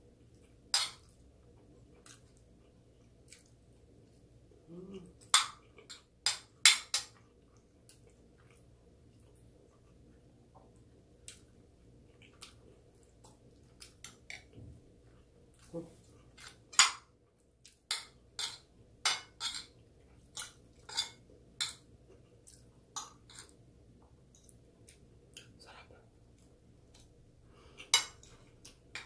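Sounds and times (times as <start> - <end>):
cutlery clinking on a plate: 17.9 - 19.8, 20.4 - 21.8, 27.8 - 28.4.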